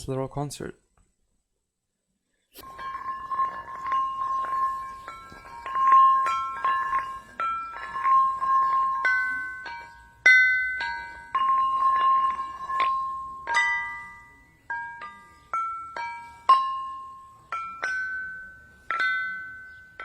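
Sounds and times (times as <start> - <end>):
ringing rocks struck in a tune: 2.6 - 20.0.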